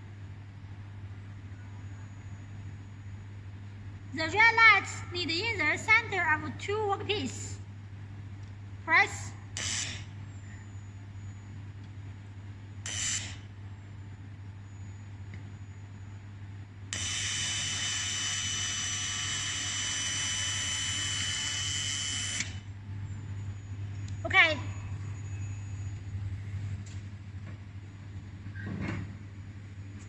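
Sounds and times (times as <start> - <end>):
welding machine low hum: 5.2 - 30.0
laser welder high-pitched buzz: 9.5 - 10.1, 12.8 - 13.5, 16.9 - 22.7.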